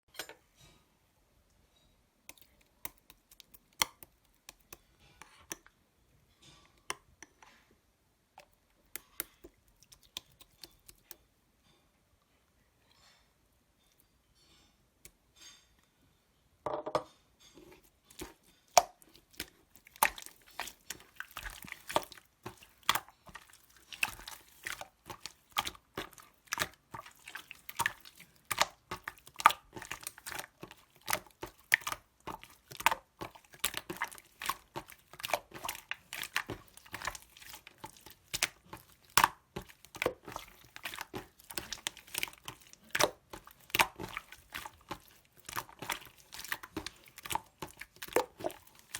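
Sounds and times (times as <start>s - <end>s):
slime squished by hand: 18.1s - 48.9s.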